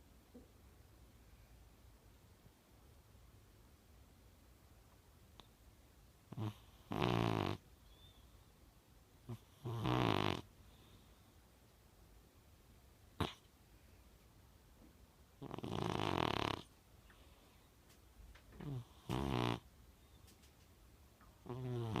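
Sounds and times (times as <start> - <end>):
cat snoring: 6.3 - 7.6, 9.3 - 10.5, 13.2 - 13.5, 15.4 - 16.7, 18.6 - 19.6, 21.5 - 22.0.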